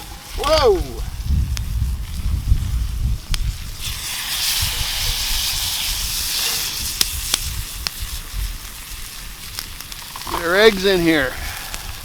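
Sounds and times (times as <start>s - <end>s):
frying pan sizzling: 0.0s - 12.0s
sharp pops: 6.6s - 8.1s.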